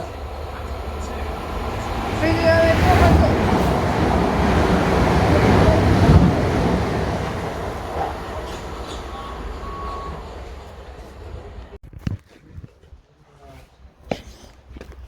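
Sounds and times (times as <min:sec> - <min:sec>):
train rumbling: 0:00.0 - 0:11.8
faint train squeals: 0:04.6 - 0:11.6.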